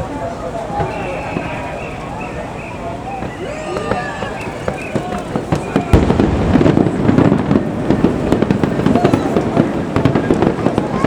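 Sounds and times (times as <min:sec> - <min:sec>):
fireworks bangs and crackling pops: 0:00.3 - 0:11.0
deep firework boom: 0:03.9 - 0:11.0.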